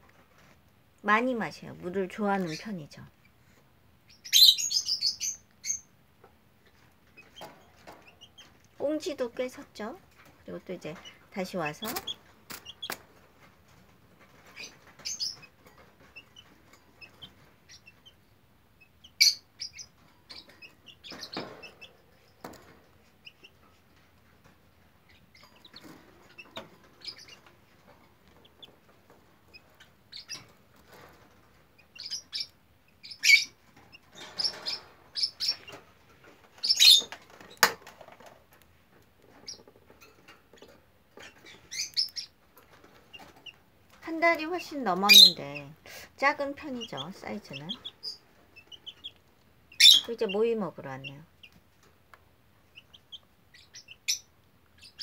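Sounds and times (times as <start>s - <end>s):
chick peeping: 6.6s - 13.0s, 14.3s - 24.4s, 25.0s - 30.8s, 31.8s - 38.4s, 39.3s - 51.7s, 52.6s - 55.0s.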